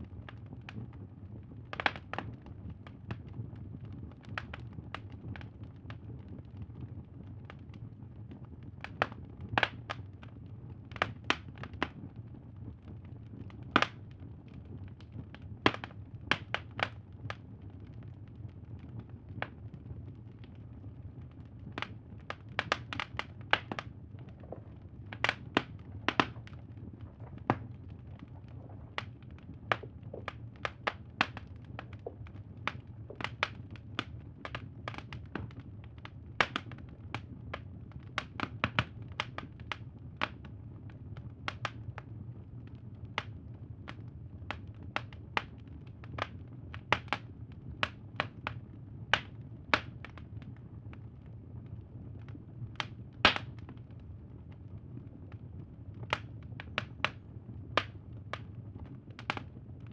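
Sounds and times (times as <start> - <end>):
low steady rumble: 0.0 - 59.9
wood fire crackling and popping: 0.0 - 59.9.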